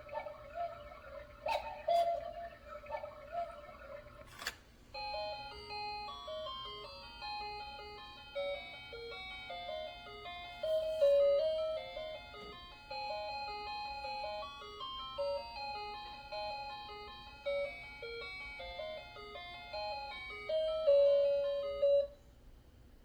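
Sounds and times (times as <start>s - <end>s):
electronic clock chime melody: 5.0s - 22.2s.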